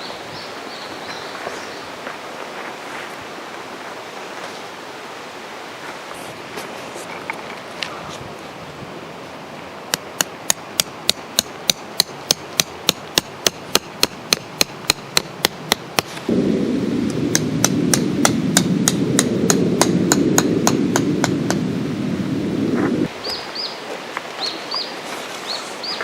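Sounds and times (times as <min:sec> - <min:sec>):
hammer striking tarp peg: 0:10.0 - 0:16.2
low rumbling noise: 0:13.3 - 0:23.2.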